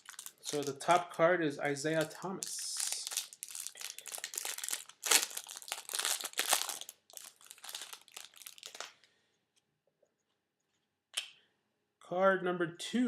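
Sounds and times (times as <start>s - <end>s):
plastic wrapper crinkling: 0.0s - 1.0s, 1.9s - 9.1s.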